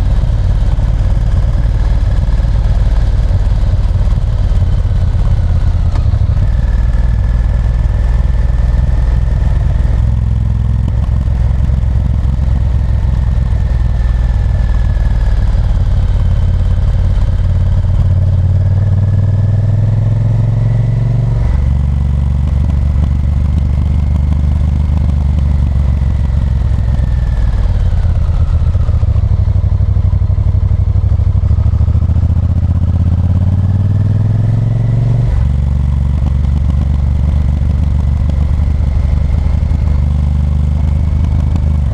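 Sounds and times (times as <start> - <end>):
motorcycle engine running: 0.0 - 41.9.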